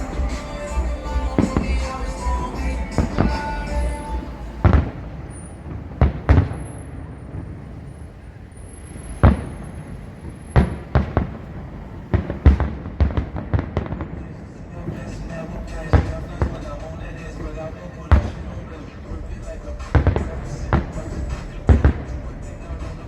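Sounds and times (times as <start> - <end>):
music with sustained tones: 0.0 - 5.3
firework bangs: 0.0 - 23.0.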